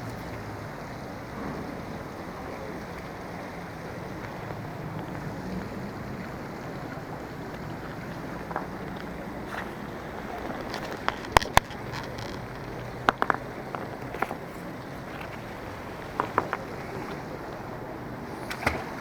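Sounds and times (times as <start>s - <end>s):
low engine rumble: 0.0s - 19.0s
wind on microphone: 3.9s - 18.8s.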